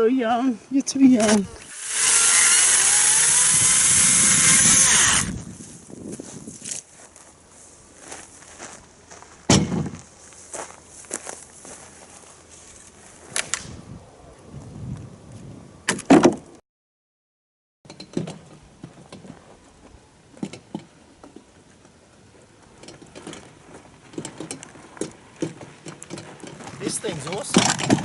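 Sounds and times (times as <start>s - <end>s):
knocks and bumps: 24.1s - 28.0s.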